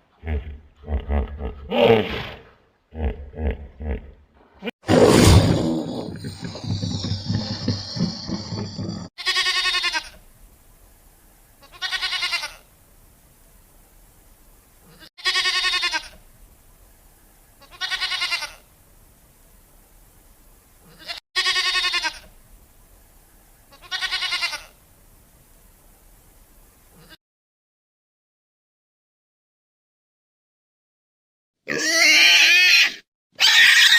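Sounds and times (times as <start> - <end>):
loud rough animal sound: 0.2 - 9.1
sheep or goat bleating: 9.2 - 10.2, 11.6 - 12.6, 14.9 - 16.2, 17.6 - 18.6, 20.9 - 22.3, 23.7 - 24.8, 31.7 - 33.9.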